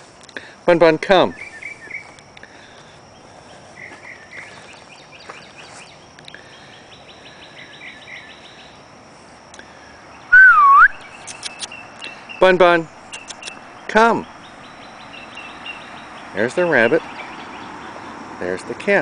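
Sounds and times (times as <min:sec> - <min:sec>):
birds chirping and trilling: 0:00.0 - 0:19.0
high insect tone: 0:00.0 - 0:19.0
loud gliding whistle: 0:10.3 - 0:11.0.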